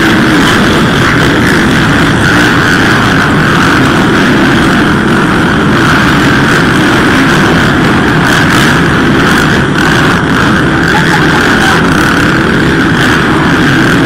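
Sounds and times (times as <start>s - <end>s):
motocross bikes racing: 0.0s - 14.0s.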